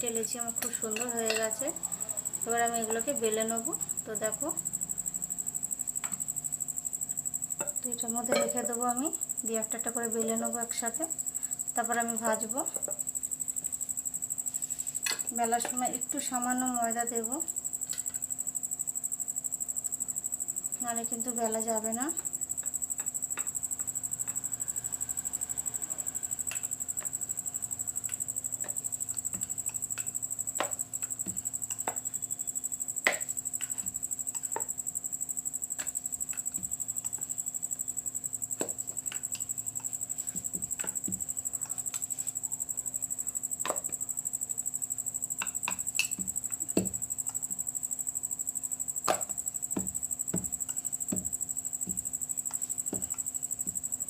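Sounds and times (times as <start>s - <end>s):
steady high-pitched whine: 0.0s - 54.0s
rolling pin rolling dough: 38.6s - 42.4s.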